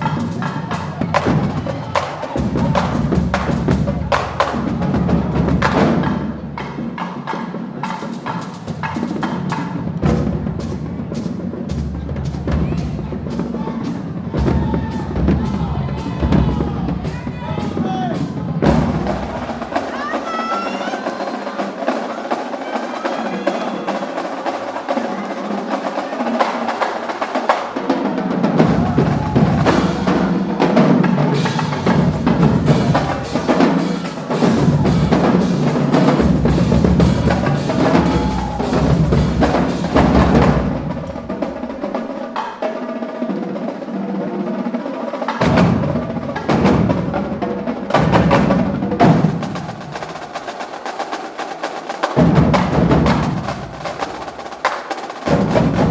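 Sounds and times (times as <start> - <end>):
snare and tenor drum strokes: 0.0 - 55.9
bass drums: 8.7 - 19.8, 28.5 - 41.9, 55.3 - 55.9.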